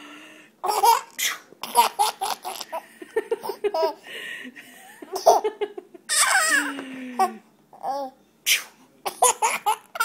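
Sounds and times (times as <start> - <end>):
baby giggling and laughing: 5.2 - 8.1.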